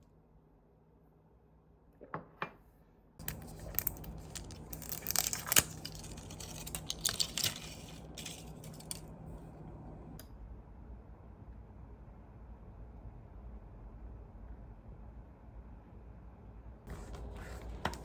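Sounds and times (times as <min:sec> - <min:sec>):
packaging crinkling and tearing: 0:03.2 - 0:09.1
low steady hum: 0:03.2 - 0:18.0.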